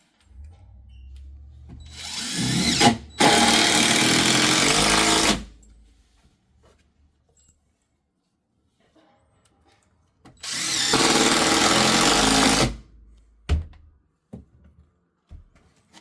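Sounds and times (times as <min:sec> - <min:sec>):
low steady hum: 0:00.2 - 0:02.2
handheld power tool running: 0:01.9 - 0:05.6, 0:10.4 - 0:12.8.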